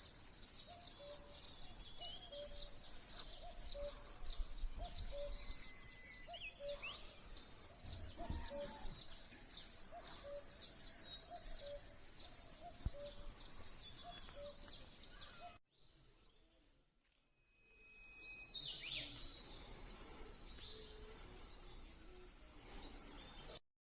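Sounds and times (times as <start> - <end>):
small birds chirping: 0.0 - 23.6.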